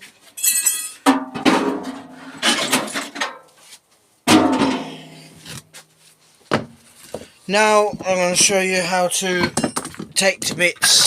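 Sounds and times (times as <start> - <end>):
metal casing clanking: 4.3 - 5.3.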